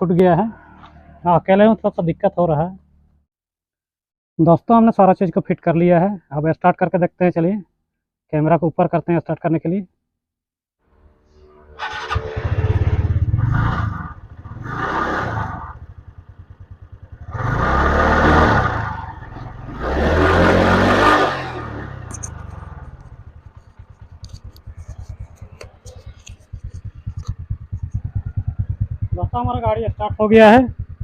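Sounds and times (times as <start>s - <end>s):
ticking engine noise: 10.9s - 31.0s
scooter engine revving and idling: 11.0s - 31.0s.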